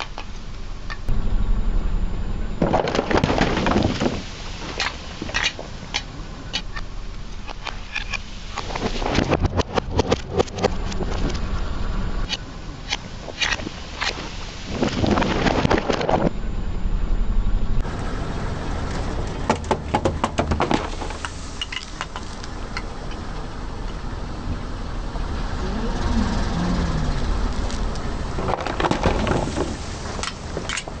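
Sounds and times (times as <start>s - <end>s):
low car rumble: 0.0s - 31.0s
tyres crushing objects: 2.6s - 6.7s, 19.4s - 22.6s, 27.7s - 31.0s.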